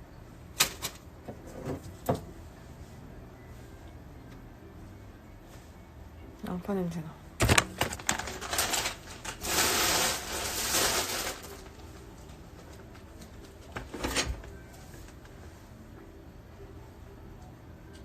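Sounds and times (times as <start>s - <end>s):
rustling noise: 7.4s - 15.8s.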